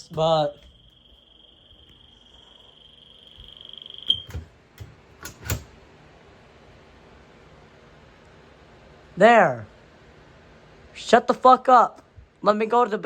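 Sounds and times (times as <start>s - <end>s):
smoke detector high tone: 0.0s - 4.6s
sharp clicks and knocks: 3.4s - 5.7s.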